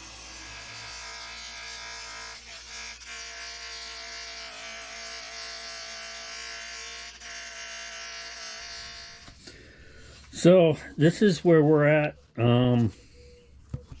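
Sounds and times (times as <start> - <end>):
small power tool whining: 0.0 - 9.5.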